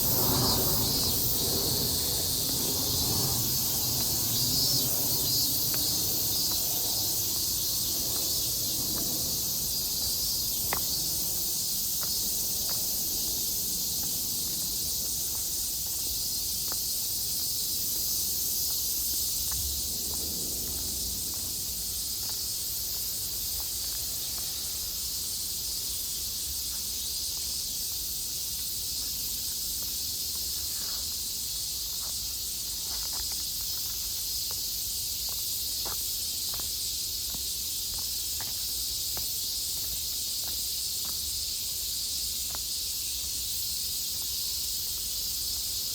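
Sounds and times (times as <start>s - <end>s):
cicadas chorus: 0.0s - 45.9s.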